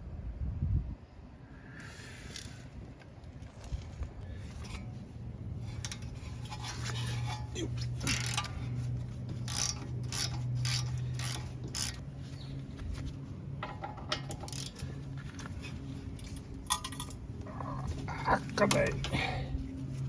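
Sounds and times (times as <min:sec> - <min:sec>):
steady low hum: 0:00.0 - 0:20.0
metal tools clinking: 0:05.6 - 0:13.0, 0:13.6 - 0:19.4
ratcheting tool clicks: 0:08.0 - 0:08.6, 0:09.4 - 0:12.0.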